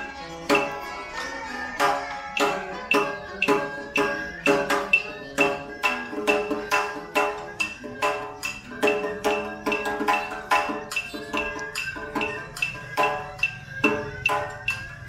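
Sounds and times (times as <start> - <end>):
plucked strings: 0.0 - 15.0
ringing percussion strikes: 0.0 - 15.0.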